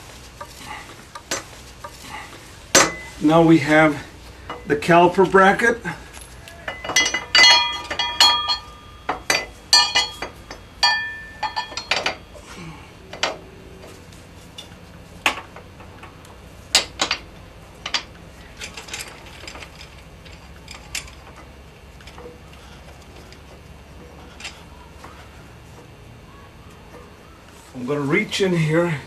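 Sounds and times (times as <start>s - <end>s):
metal parts clinking: 2.7s - 12.4s, 14.5s - 24.7s.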